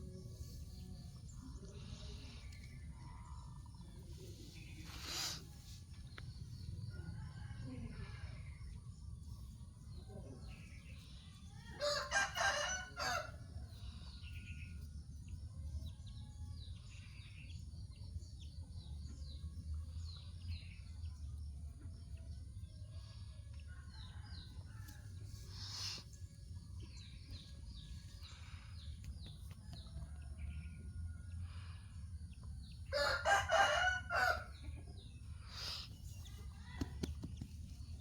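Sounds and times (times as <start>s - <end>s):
small birds chirping: 0.0s - 38.0s
rooster crowing: 11.8s - 13.3s, 32.9s - 34.5s.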